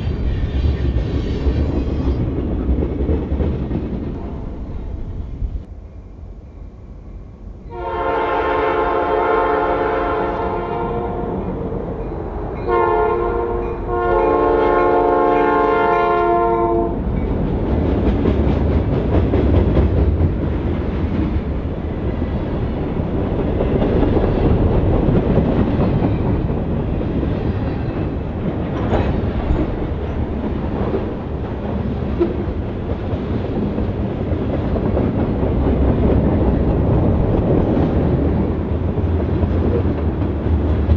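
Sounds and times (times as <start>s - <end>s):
diesel locomotive engines rumbling: 0.0s - 40.9s
locomotive horn blasts: 7.7s - 11.5s, 12.7s - 17.0s
train wheels clicking: 17.1s - 40.9s.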